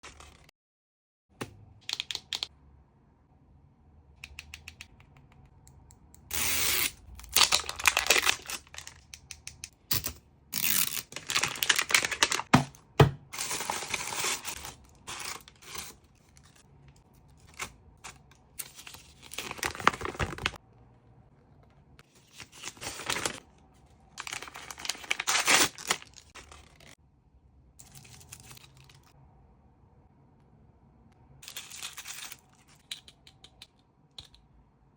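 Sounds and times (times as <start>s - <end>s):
packaging wrappers rustling: 7.2s - 9.1s, 10.6s - 16.7s, 17.4s - 20.6s, 22.2s - 23.4s, 24.2s - 27.0s.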